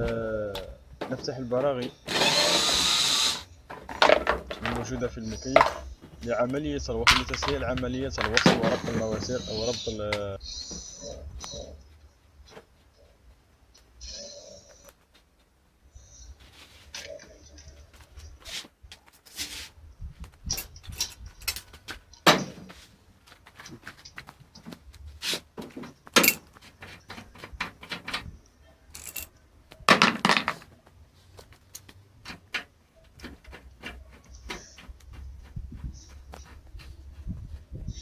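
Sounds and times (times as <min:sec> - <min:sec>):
metal tools clinking and knocking: 0:20.5 - 0:21.8, 0:26.1 - 0:26.6, 0:28.9 - 0:30.6.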